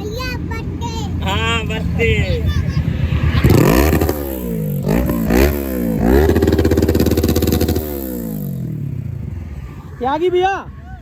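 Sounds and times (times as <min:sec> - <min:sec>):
motorcycle engine revving: 0:01.1 - 0:10.7.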